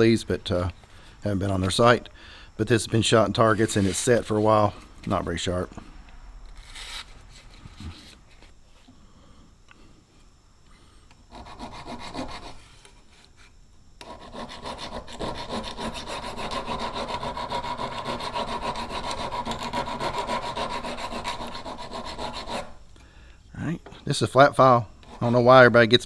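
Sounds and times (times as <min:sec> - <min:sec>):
file rasping on steel blade: 0:11.3 - 0:12.6, 0:14.0 - 0:22.8.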